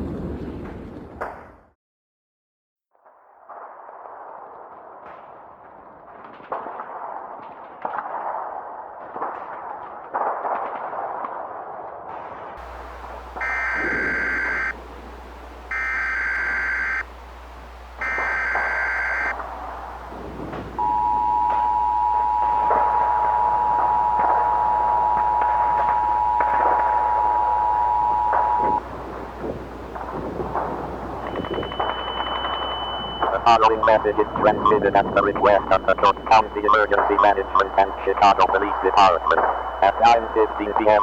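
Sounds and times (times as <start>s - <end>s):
digital header data bursts: 12.6s - 17.1s, 17.9s - 19.4s, 31.3s - 41.0s
crackling popping noise: 12.6s - 41.0s
low hum: 12.6s - 41.0s
two-tone attention signal: 13.4s - 14.8s, 15.7s - 17.0s, 18.0s - 19.3s, 20.8s - 28.8s, 31.2s - 41.0s.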